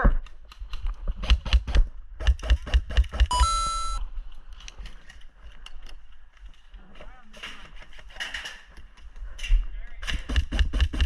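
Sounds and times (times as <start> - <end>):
brief ringing tone: 3.3 - 4.0.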